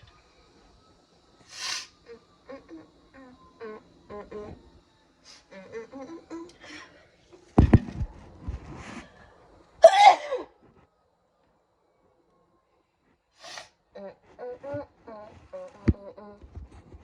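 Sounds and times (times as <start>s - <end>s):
wheezy in-breaths: 1.4s - 2.0s, 13.3s - 14.8s
person sneezing loudly: 9.8s - 10.5s.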